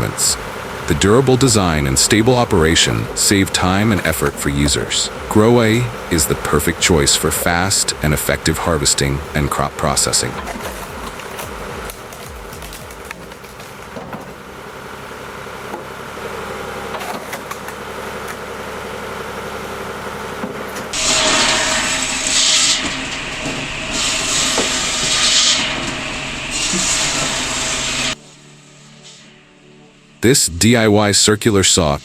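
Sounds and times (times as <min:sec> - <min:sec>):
machine cutting through wood: 0:00.0 - 0:28.2
log processing machine running: 0:00.0 - 0:29.4.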